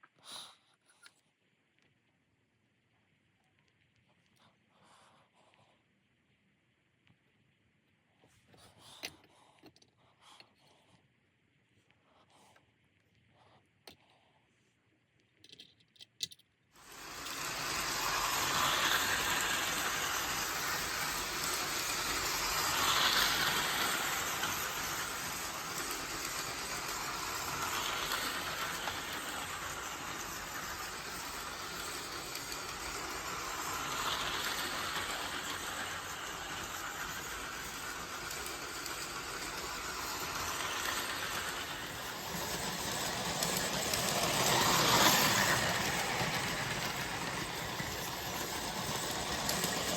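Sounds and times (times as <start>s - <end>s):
model train whirring rattle: 16.8s - 49.9s.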